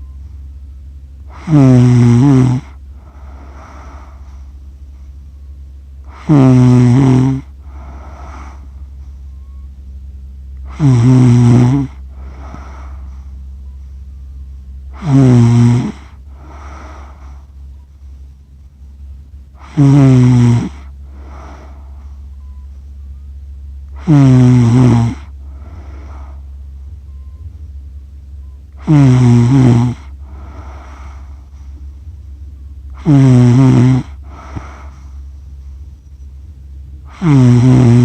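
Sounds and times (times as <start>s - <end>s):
steady low hum: 0.0s - 38.0s
breathy breaths: 1.2s - 9.7s, 10.5s - 22.8s, 23.9s - 27.7s, 28.4s - 38.0s
person snoring: 1.3s - 4.6s, 6.0s - 8.8s, 10.6s - 13.3s, 14.9s - 17.5s, 19.5s - 22.2s, 23.9s - 26.5s, 28.8s - 31.8s, 32.9s - 35.8s, 37.0s - 38.0s.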